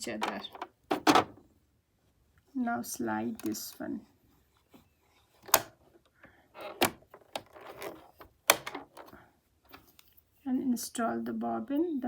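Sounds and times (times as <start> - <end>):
scraping and handling noise: 3.2 - 10.4.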